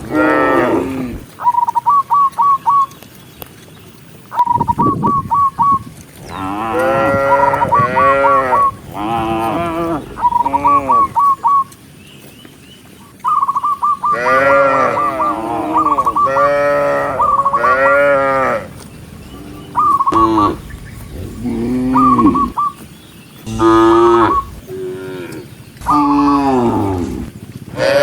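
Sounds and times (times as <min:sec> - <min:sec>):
cattle mooing: 0:00.0 - 0:01.3, 0:06.2 - 0:11.4, 0:14.1 - 0:22.7, 0:23.4 - 0:28.0.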